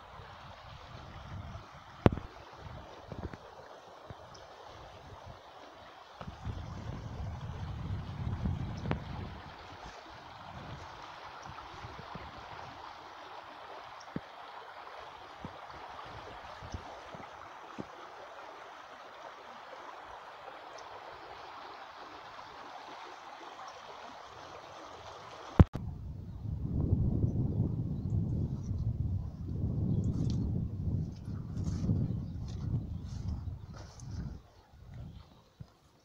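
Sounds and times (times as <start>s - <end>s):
stream babbling: 0.0s - 25.7s.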